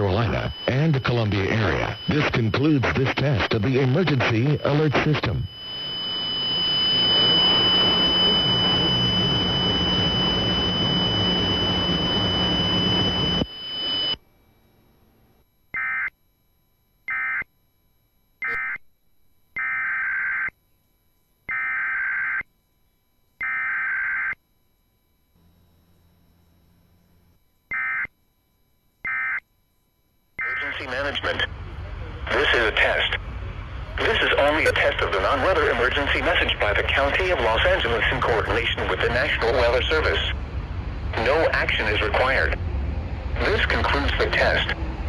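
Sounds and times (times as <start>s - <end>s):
radio static hiss: 0.0s - 13.4s, 30.4s - 42.6s, 43.4s - 44.9s
screeching digital data bursts: 0.0s - 13.4s
steady high whine: 0.0s - 15.6s, 24.3s - 45.0s.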